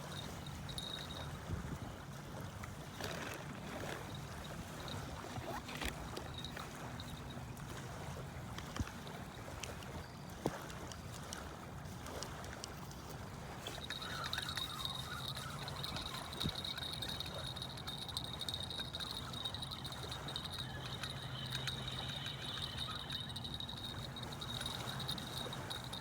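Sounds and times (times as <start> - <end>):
water: 0.0 - 26.0
wind noise: 12.1 - 26.0
high thin tone: 13.6 - 26.0
steady low hum: 13.7 - 26.0.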